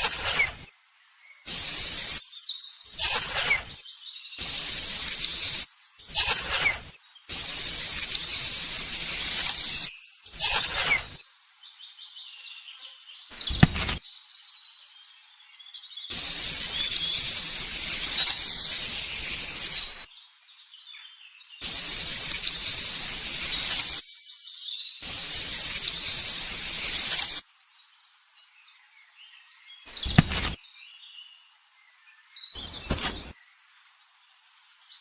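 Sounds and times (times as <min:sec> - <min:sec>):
hissing noise: 0:00.0 - 0:00.6, 0:01.5 - 0:02.2, 0:02.9 - 0:03.8, 0:04.4 - 0:11.2, 0:13.4 - 0:14.0, 0:16.1 - 0:20.1, 0:21.6 - 0:24.0, 0:25.0 - 0:27.4, 0:29.9 - 0:30.6
birds chirping faintly: 0:00.0 - 0:35.0.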